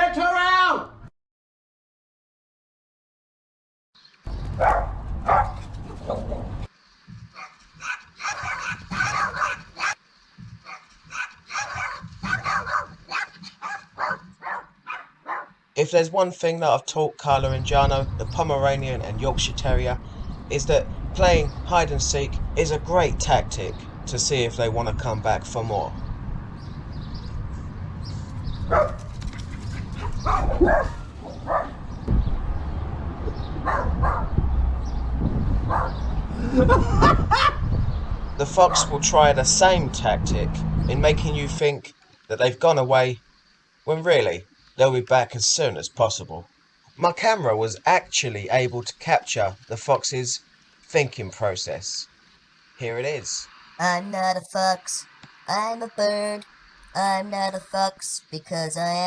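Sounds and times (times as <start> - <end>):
low rumble: 4.3 - 6.7, 17.3 - 41.6
small dog yapping: 4.5 - 6.3, 7.3 - 10.0, 10.6 - 15.6, 28.7 - 29.1, 30.0 - 31.8, 37.0 - 37.6.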